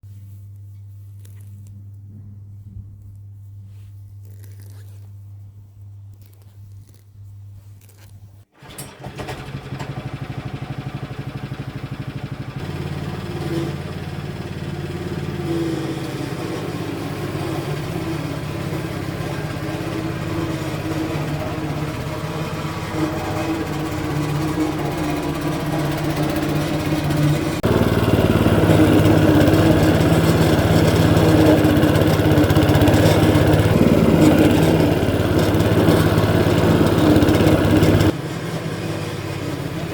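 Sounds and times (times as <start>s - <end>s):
lawn scarifier engine running: 8.6s - 39.9s.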